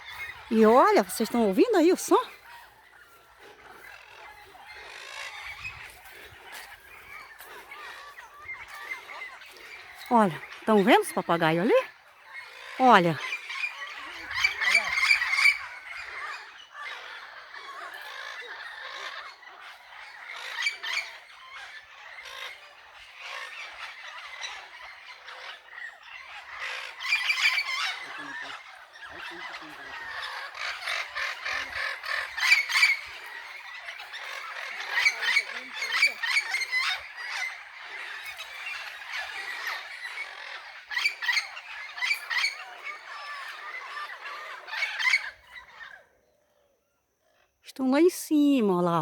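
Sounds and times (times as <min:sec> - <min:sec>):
parrots squawking and chirping: 0:06.5 - 0:46.0.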